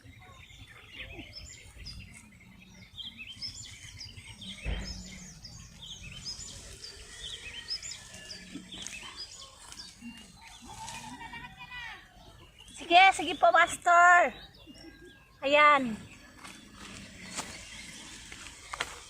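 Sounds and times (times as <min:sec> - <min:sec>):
birds chirping: 0:00.0 - 0:19.0
dull thump: 0:04.6 - 0:05.3.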